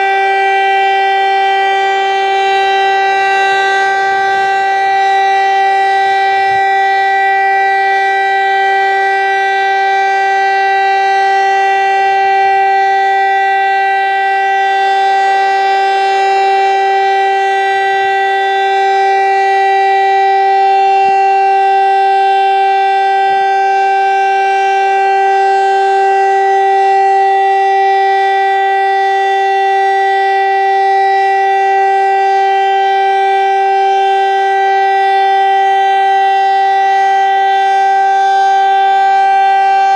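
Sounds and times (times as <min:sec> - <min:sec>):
civil defence siren steady tone: 0:00.0 - 0:39.9.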